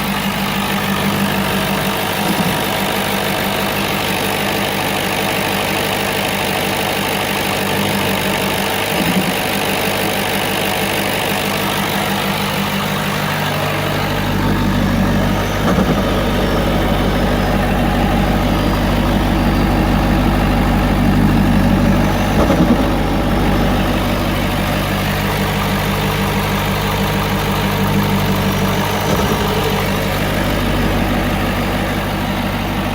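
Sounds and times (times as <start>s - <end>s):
diesel engine idling: 0.0s - 32.9s.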